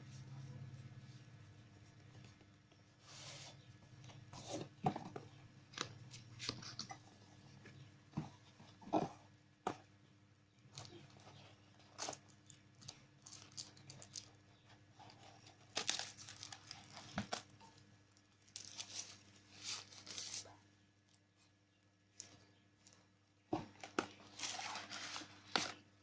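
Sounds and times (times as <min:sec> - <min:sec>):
packaging tearing and crinkling: 0:11.9 - 0:14.4, 0:15.1 - 0:17.5, 0:18.5 - 0:20.4, 0:24.0 - 0:25.8.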